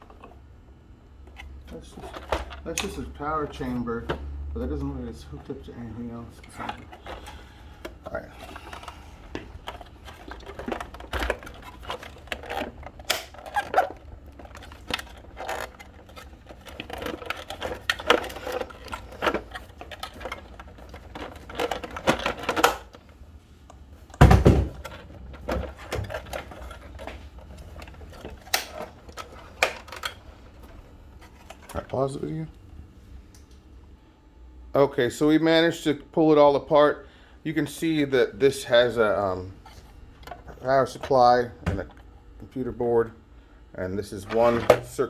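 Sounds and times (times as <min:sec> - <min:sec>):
plastic and metal parts clattering: 0:01.3 - 0:23.1, 0:24.1 - 0:32.4, 0:44.2 - 0:45.0.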